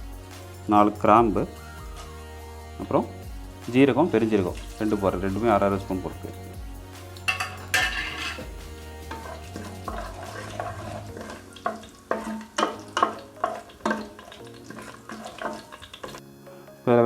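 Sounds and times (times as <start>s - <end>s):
light sizzle of frying spices: 2.8s - 17.0s
spoon scraping and knocking pot: 7.3s - 16.2s.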